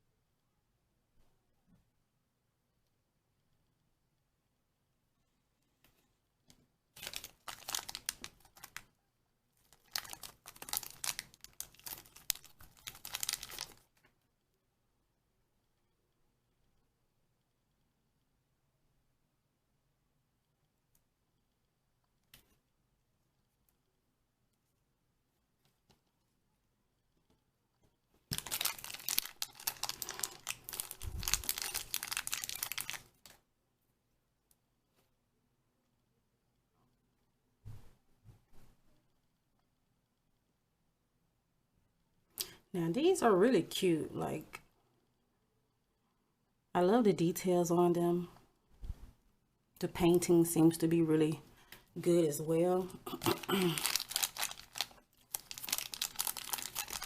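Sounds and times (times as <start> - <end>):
wrapper crinkling and tearing: 7.0 - 8.9, 9.6 - 13.9, 28.3 - 33.4, 53.1 - 57.0.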